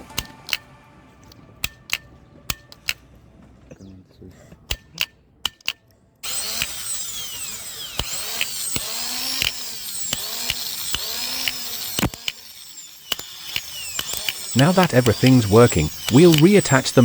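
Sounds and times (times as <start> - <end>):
switch clicks: 0.0 - 3.1, 4.7 - 17.0
sharp ticks: 1.6 - 3.0, 4.7 - 17.0
electric motor whine: 6.2 - 17.0.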